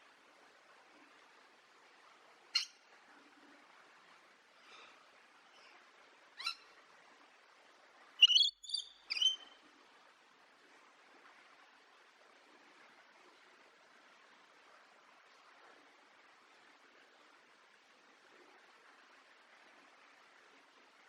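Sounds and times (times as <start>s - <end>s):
faint steady hiss: 0.0s - 21.0s
parrot calling: 8.2s - 9.5s.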